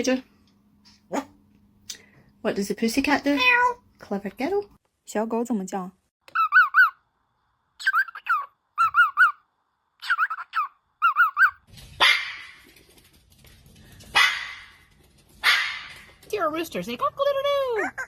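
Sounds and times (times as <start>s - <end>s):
parrot imitating dog barking: 6.3s - 7.0s, 7.8s - 9.4s, 10.0s - 11.6s.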